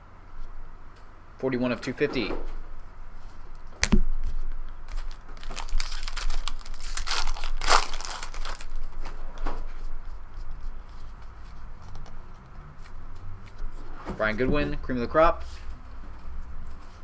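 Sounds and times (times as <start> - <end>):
foil wrapper crinkling and tearing: 4.9 - 9.0.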